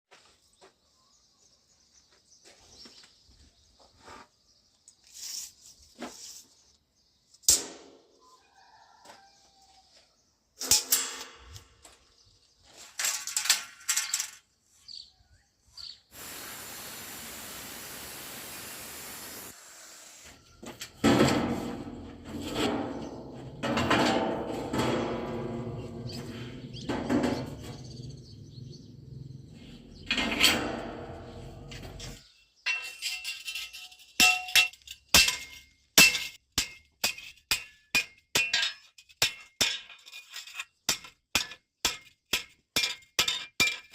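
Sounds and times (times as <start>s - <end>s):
steady hiss: 16.1s - 20.2s
sharp metallic knocks: 21.0s - 28.3s.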